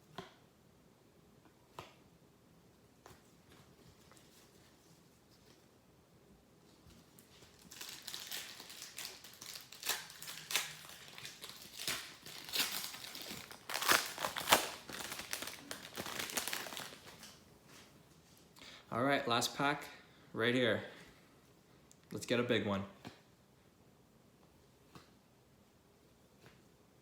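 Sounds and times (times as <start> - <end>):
card pack wrapper crinkling: 7.2 - 17.4.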